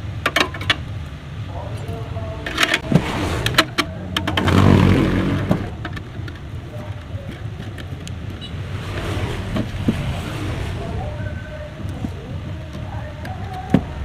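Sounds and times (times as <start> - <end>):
vehicle engine rumbling: 0.0 - 14.0.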